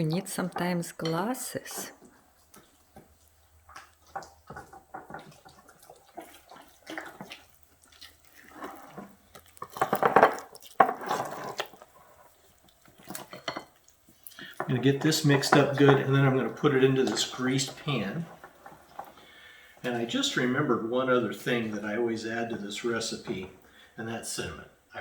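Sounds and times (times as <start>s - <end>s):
batter sloshing in bowl: 1.9s - 20.5s.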